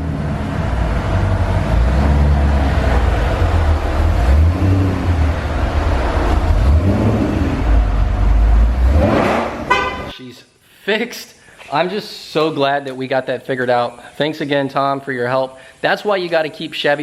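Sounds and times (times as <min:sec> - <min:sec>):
car exhaust rumble: 0:00.0 - 0:10.1
tyre and road noise: 0:00.0 - 0:10.1.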